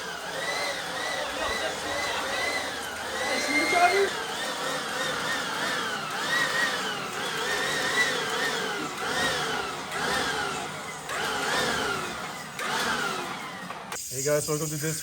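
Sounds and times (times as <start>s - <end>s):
leaf blower motor whine: 0.0s - 14.0s.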